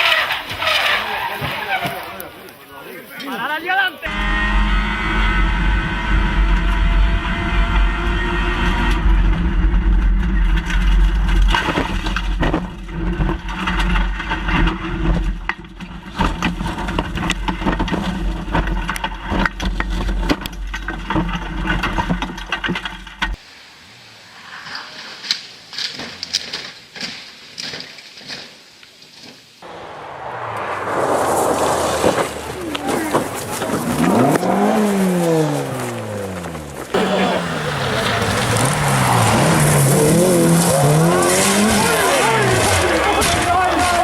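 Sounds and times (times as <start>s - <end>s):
rally car engine running: 4.1s - 23.4s, 31.4s - 44.0s
scattered clicks and thuds: 10.0s - 23.4s.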